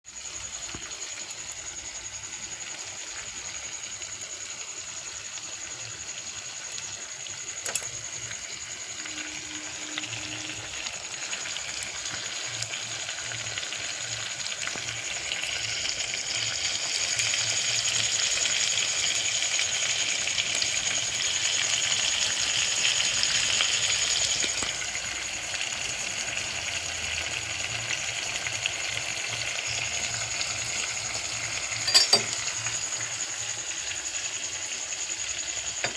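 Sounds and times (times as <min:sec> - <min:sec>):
food sizzling in hot oil: 0:00.0 - 0:35.9
click: 0:07.6 - 0:08.0.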